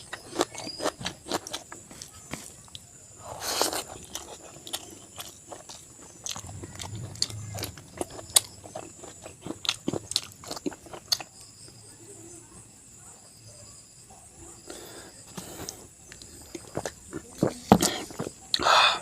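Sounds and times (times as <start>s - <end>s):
person chewing food: 0.0s - 2.1s, 2.7s - 11.3s, 15.4s - 18.7s.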